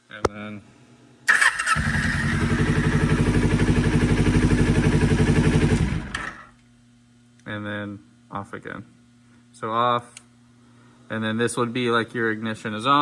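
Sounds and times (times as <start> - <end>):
motorcycle engine starting and running: 1.3 - 6.5.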